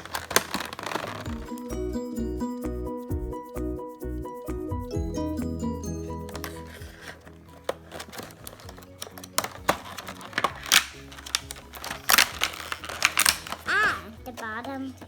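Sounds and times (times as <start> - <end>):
toy packaging clicks and crinkles: 0.0 - 1.7, 6.2 - 15.0
background music: 0.0 - 15.0.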